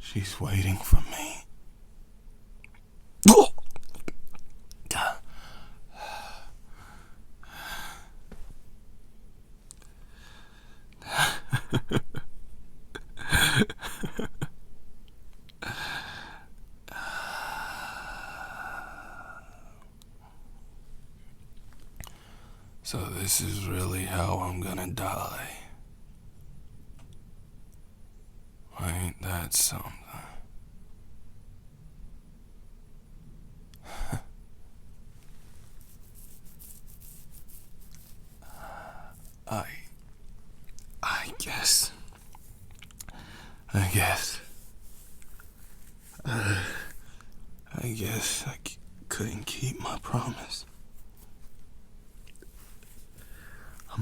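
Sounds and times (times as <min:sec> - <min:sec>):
man breathing heavily: 0:05.0 - 0:08.2, 0:15.6 - 0:19.5, 0:38.3 - 0:39.4, 0:43.1 - 0:43.7, 0:44.4 - 0:47.3, 0:53.1 - 0:54.0
sharp gasping breath: 0:05.1 - 0:08.2, 0:43.1 - 0:43.7, 0:44.4 - 0:47.4, 0:53.1 - 0:53.9.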